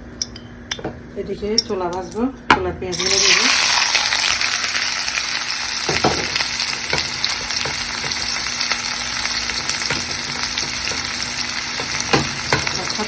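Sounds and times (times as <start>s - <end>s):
food sizzling in oil: 2.9s - 13.0s.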